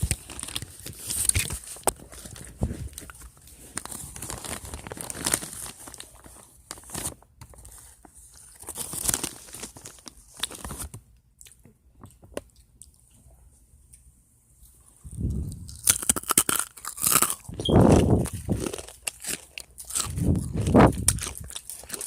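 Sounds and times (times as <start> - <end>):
person chewing crunchy food: 14.7 - 22.0.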